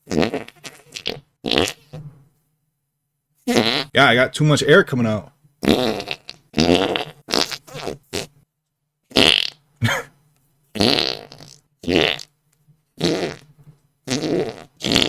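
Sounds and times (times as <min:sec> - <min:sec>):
armpit fart noises: 0:00.0 - 0:02.2, 0:03.5 - 0:04.1, 0:05.6 - 0:08.4, 0:09.1 - 0:10.1, 0:10.7 - 0:12.4, 0:13.0 - 0:15.0.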